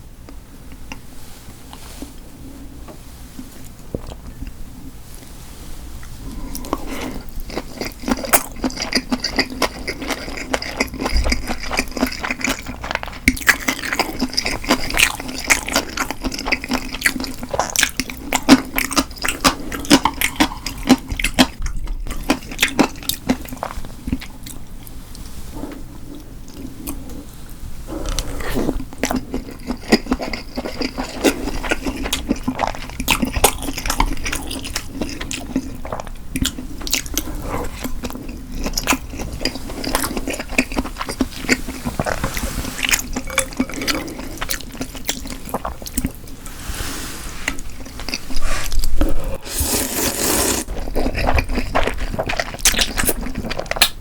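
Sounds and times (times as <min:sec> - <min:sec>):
person chewing food: 0:06.0 - 0:46.8, 0:47.4 - 0:54.0.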